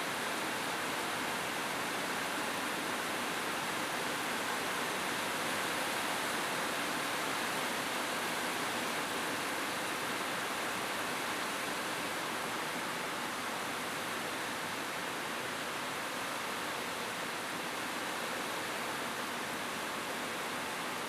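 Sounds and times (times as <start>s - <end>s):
rain falling on a roof: 0.0s - 21.0s.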